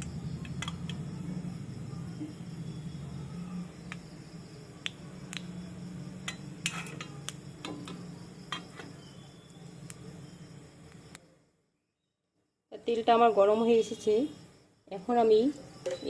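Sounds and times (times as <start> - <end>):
steady low hum: 0.0 - 11.2.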